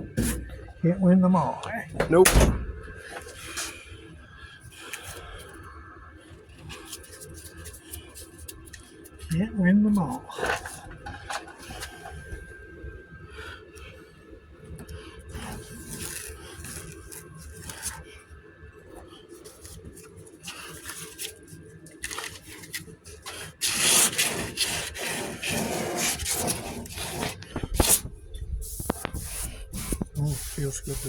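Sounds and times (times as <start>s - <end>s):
sandpaper rubbing on filler: 0.1s - 0.6s, 15.4s - 17.8s, 23.2s - 31.0s.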